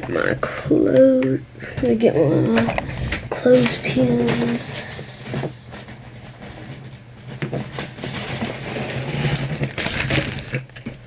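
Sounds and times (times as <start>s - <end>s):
rustling: 2.7s - 10.8s.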